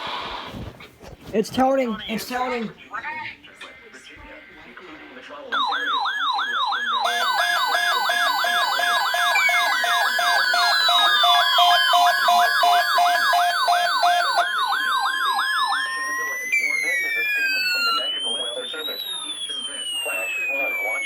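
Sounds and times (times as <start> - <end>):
fast yelp siren: 5.6 - 21.0
pulsing yelp siren: 5.6 - 21.0
wailing siren: 5.6 - 21.0.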